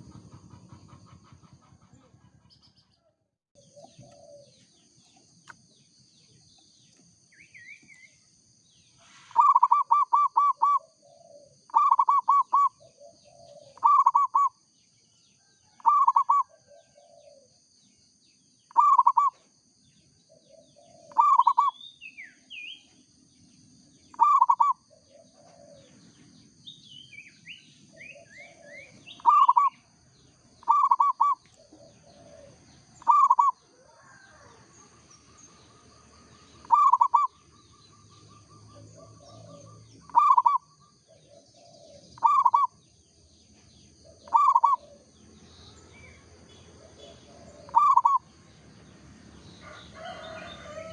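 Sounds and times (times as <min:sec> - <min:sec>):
dove cooing: 0:00.0 - 0:02.2, 0:03.6 - 0:04.8, 0:09.1 - 0:14.6, 0:15.7 - 0:17.6, 0:18.7 - 0:19.4, 0:20.3 - 0:21.8, 0:24.1 - 0:26.3, 0:27.5 - 0:29.9, 0:30.6 - 0:34.8, 0:35.7 - 0:42.8, 0:44.0 - 0:45.3, 0:46.5 - 0:48.3
small birds chirping: 0:00.0 - 0:50.9.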